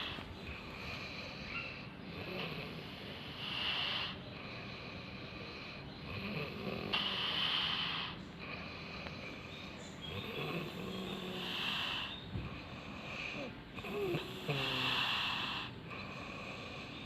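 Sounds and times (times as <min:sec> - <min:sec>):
person snoring: 0:02.1 - 0:09.0, 0:10.1 - 0:12.2, 0:12.9 - 0:17.0.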